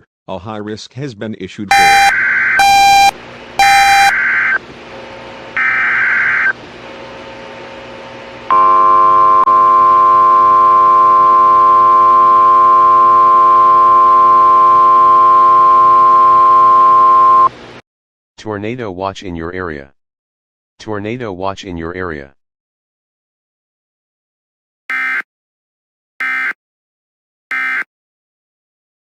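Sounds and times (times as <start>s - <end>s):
harsh digital data bursts: 1.7s - 4.6s, 5.6s - 6.5s
piercing attention tone: 1.7s - 4.6s, 8.5s - 17.5s.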